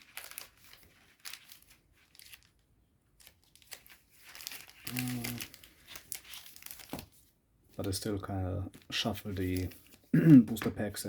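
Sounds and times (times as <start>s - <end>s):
foil packs crinkling: 0.0s - 7.2s, 8.8s - 10.1s.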